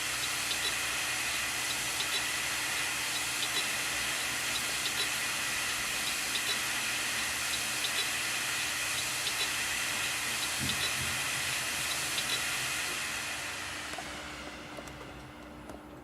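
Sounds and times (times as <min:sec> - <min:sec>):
hard drive hiss: 0:00.0 - 0:16.0
hard drive light ticks: 0:01.6 - 0:02.3, 0:03.1 - 0:05.2, 0:06.0 - 0:08.2, 0:08.9 - 0:11.1, 0:11.8 - 0:12.5.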